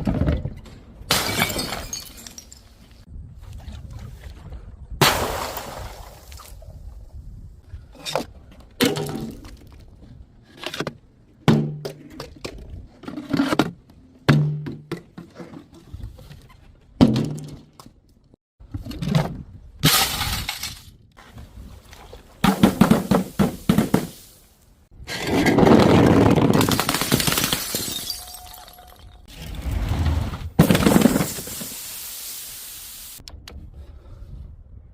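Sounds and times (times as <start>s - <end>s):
glass bottles shattering: 1.1s - 2.8s, 19.8s - 20.8s, 26.4s - 29.3s, 30.6s - 31.9s
tinkle of falling shards: 27.2s - 29.3s.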